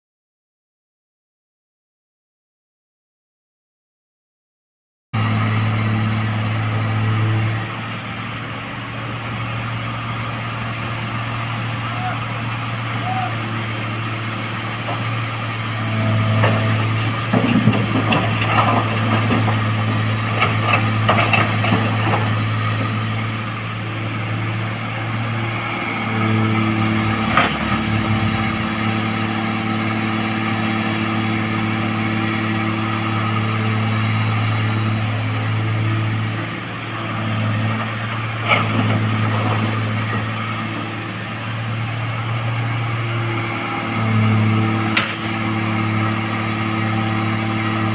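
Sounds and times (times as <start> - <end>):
diesel engine running: 5.2 - 47.9
metal knocks and clanks: 16.4 - 19.7, 20.3 - 22.3.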